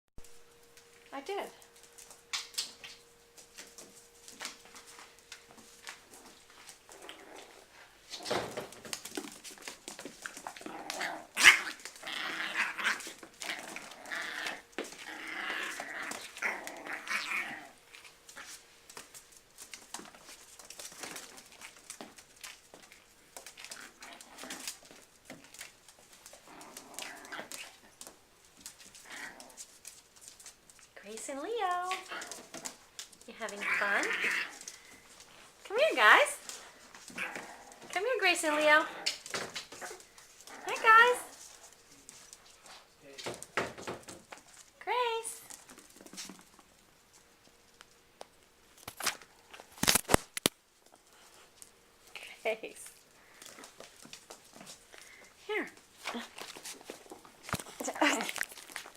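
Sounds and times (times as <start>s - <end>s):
paws scuffling: 0.3s - 58.9s
puppies growling: 5.8s - 18.5s, 20.8s - 30.0s, 31.8s - 35.4s, 36.4s - 41.8s.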